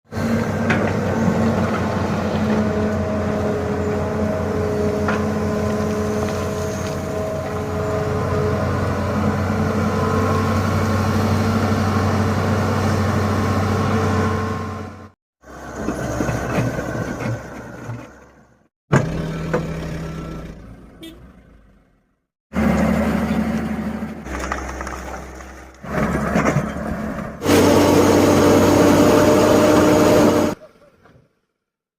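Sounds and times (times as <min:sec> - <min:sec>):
heavy machinery engines running: 0:00.1 - 0:20.6, 0:22.5 - 0:30.6
diesel engine running: 0:22.5 - 0:30.6.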